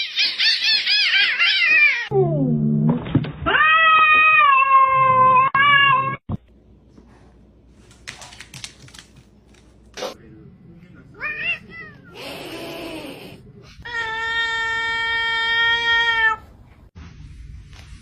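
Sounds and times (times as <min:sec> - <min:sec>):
cats yowling: 0:00.0 - 0:02.1, 0:03.5 - 0:06.2.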